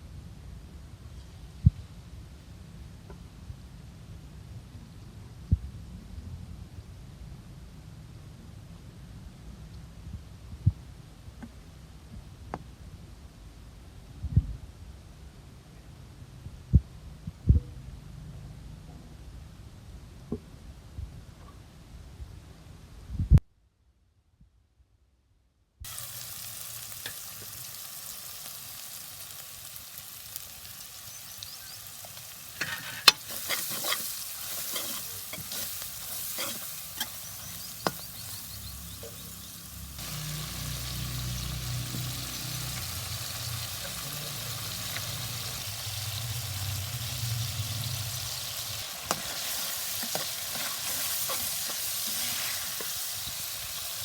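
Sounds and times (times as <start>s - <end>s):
food sizzling in oil: 25.9s - 54.0s.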